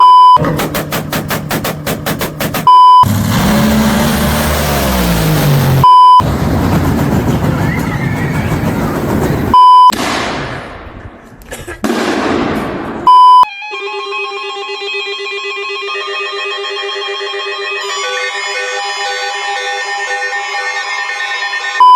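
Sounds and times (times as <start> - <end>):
electronic tone beeps: 0.0 - 0.4, 2.7 - 3.1, 5.8 - 6.2, 9.6 - 9.9, 13.1 - 18.1
noisy rumble: 0.4 - 9.6.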